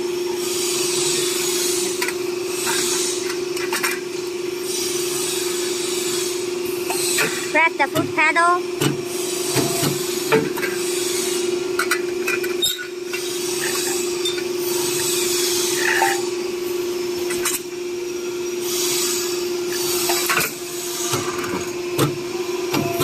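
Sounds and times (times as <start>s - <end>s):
machine motor hum: 19.4s - 23.0s.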